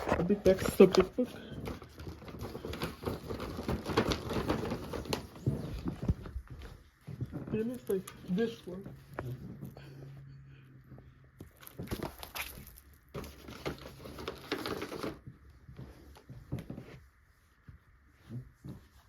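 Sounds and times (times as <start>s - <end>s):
gift bag rustling: 0.0s - 9.7s, 11.4s - 15.3s.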